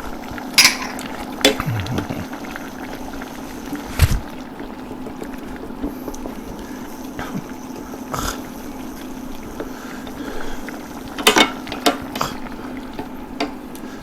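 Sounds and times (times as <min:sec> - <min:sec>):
rice simmering in a pan: 0:00.0 - 0:14.0
utensil clinking against pan: 0:00.6 - 0:01.0
steady low hum: 0:00.6 - 0:04.7.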